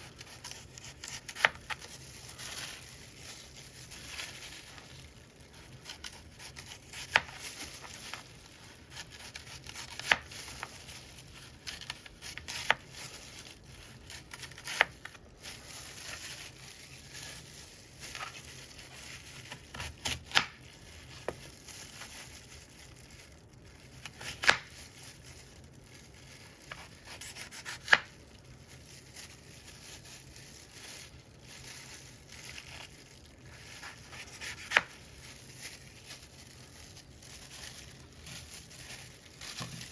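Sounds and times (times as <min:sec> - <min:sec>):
knife cutting apples: 0:08.9 - 0:10.7, 0:33.6 - 0:35.0.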